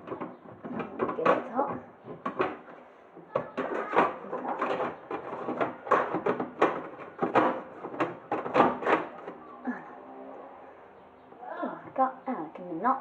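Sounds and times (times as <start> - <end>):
plastic clicks and knocks: 0.0 - 9.4.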